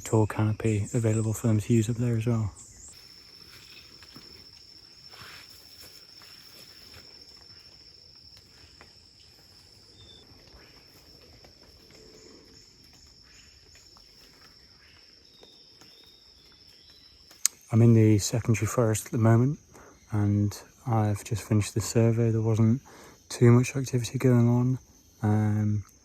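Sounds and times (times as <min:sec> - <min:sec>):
insect high-pitched trill: 0:00.0 - 0:26.0
faint scattered clicks: 0:06.2 - 0:17.8.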